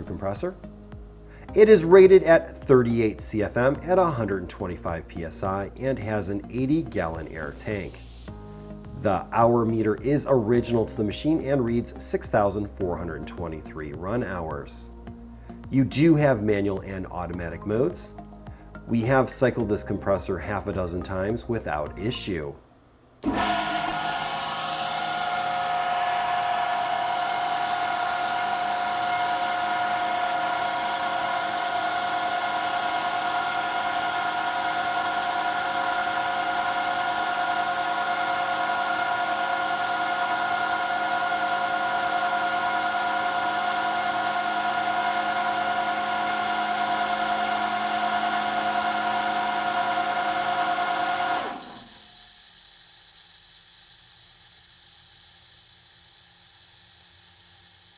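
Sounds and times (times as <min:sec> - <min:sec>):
air compressor whining: 0:23.2 - 0:57.9
air hiss from compressor: 0:51.4 - 0:57.9.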